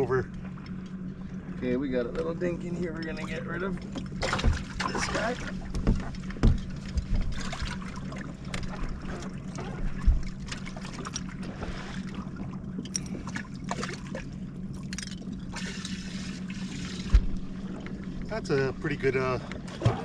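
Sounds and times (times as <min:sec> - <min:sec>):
steady low hum: 0:00.0 - 0:20.0
water trickling and splashing: 0:03.1 - 0:18.6.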